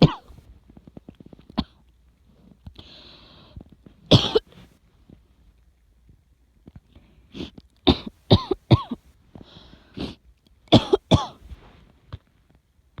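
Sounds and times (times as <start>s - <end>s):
person coughing: 0.0s - 0.4s, 4.1s - 4.4s, 7.9s - 9.0s, 10.8s - 11.4s.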